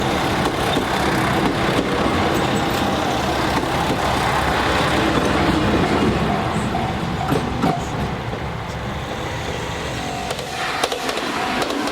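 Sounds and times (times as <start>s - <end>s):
train rumbling and rattling: 0.0s - 11.9s.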